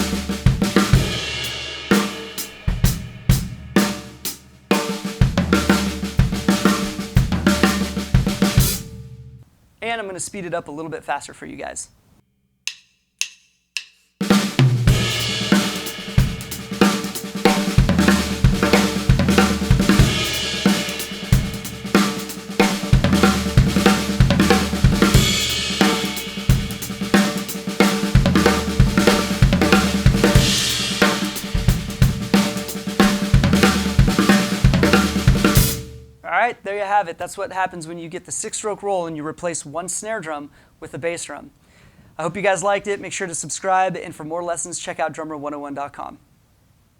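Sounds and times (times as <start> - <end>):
hi-hat and cymbal crashes: 0.0 - 9.0, 12.8 - 36.0
drum kit fill: 0.0 - 9.4, 12.7 - 36.3
drumstick clicks: 12.6 - 14.2.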